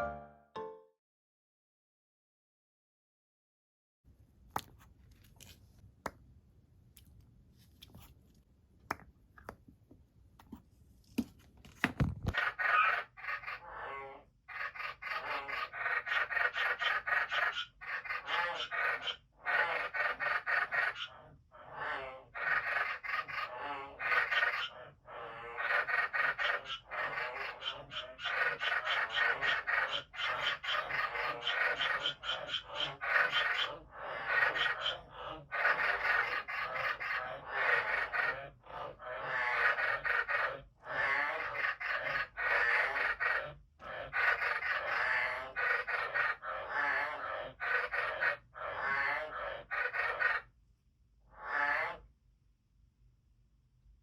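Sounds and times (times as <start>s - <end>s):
frogs calling in chorus: 12.4s - 50.5s.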